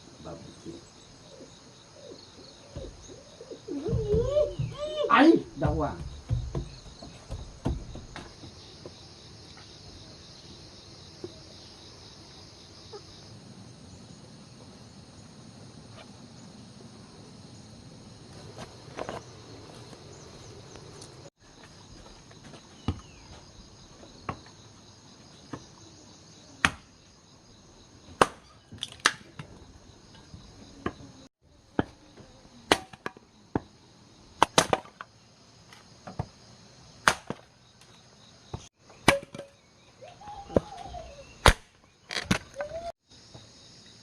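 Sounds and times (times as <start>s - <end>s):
insects chirring: 0.0s - 44.0s
sharp knocks: 5.6s - 8.6s.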